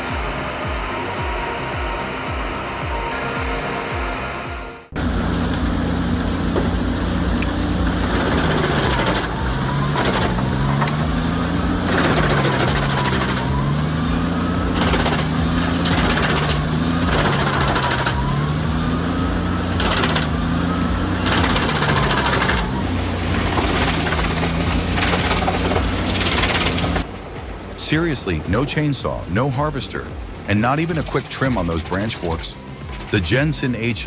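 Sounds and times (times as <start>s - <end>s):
wood chipper engine bogging down: 5.0s - 27.2s.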